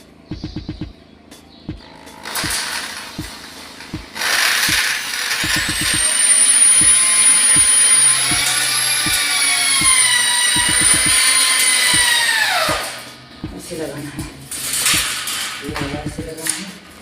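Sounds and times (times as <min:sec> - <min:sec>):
background music with drum beat: 0:00.3 - 0:02.6, 0:03.9 - 0:04.1, 0:05.4 - 0:06.1, 0:10.6 - 0:11.2, 0:13.4 - 0:13.6, 0:15.7 - 0:16.3
electric drill whining: 0:04.0 - 0:12.9.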